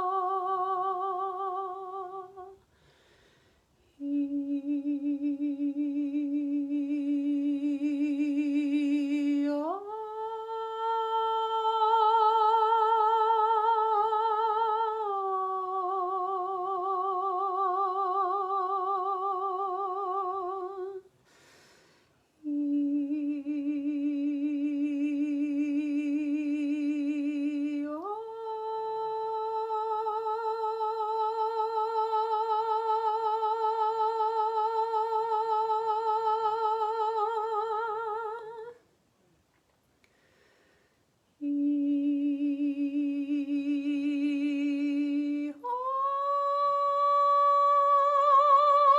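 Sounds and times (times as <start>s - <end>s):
woman breathing in: 2.6s - 3.8s, 21.2s - 22.3s, 40.0s - 41.2s.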